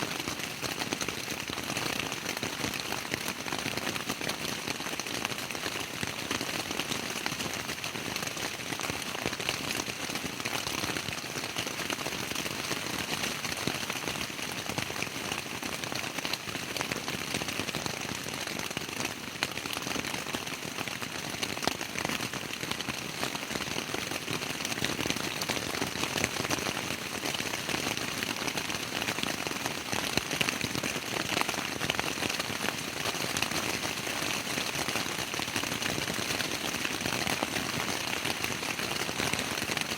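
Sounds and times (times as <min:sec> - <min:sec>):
rain pattering on tent fabric: 0:00.0 - 0:39.9.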